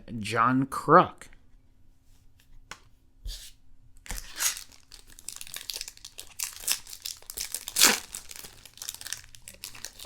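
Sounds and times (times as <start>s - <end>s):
wrapper crinkling and tearing: 4.1s - 10.0s.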